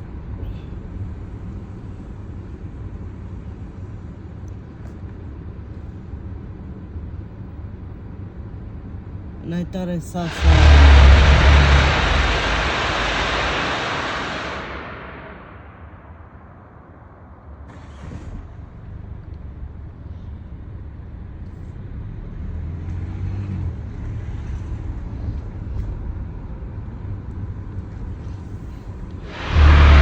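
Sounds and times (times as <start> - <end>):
low steady rumble: 0.0 - 17.7, 25.1 - 30.0.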